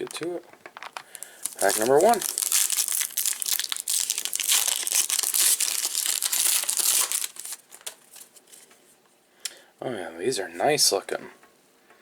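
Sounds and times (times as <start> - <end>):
plastic wrapper crinkling: 0.0 - 8.7.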